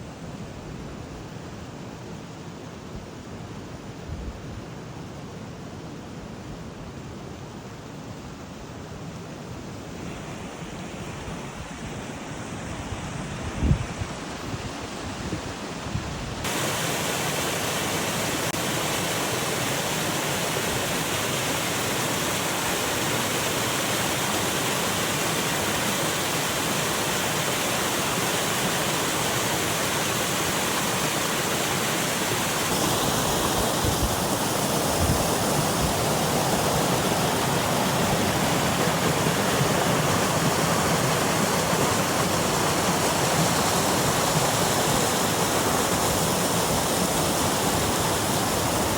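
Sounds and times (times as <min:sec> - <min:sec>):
waterfall rushing: 0:16.4 - 0:48.9.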